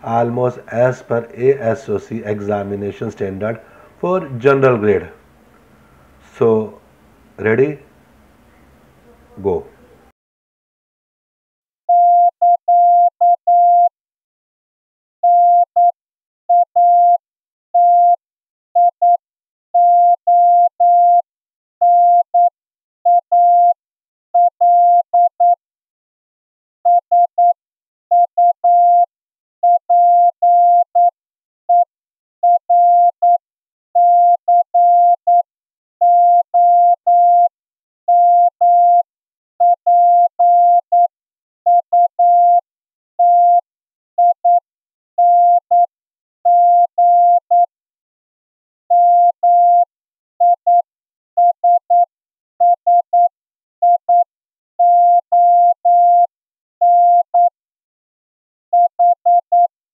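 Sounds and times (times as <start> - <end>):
morse code tone: 36.0 - 37.5, 39.6 - 41.1, 45.2 - 45.9, 46.5 - 47.7, 48.9 - 50.8, 54.8 - 57.5, 58.8 - 59.7.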